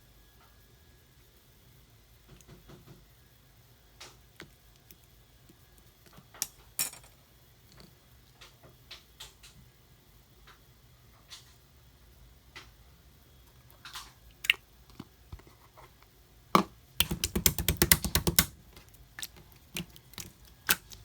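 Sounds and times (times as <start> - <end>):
slime clicking and popping: 17.0 - 18.6, 19.2 - 21.0.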